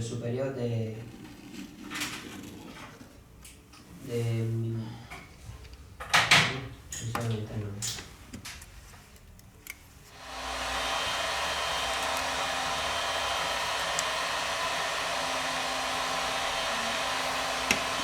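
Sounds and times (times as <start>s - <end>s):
electric hot-air blower running: 10.1s - 18.0s.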